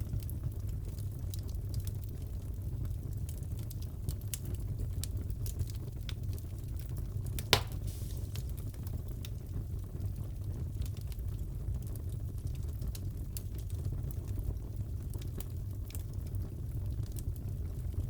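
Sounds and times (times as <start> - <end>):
fireplace crackling: 5.4 - 9.6
log pop: 7.4 - 8.6.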